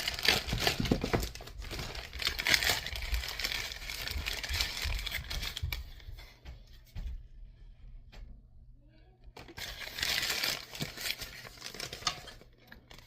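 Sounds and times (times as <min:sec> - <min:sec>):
packaging crinkling and rustling: 0:00.0 - 0:06.1, 0:09.4 - 0:13.0.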